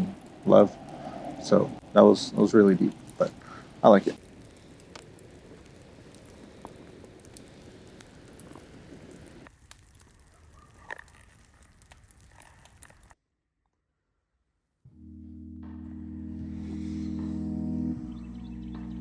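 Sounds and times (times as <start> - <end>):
soft outdoor hiss: 0.0 - 9.9
campfire crackling: 0.0 - 13.2.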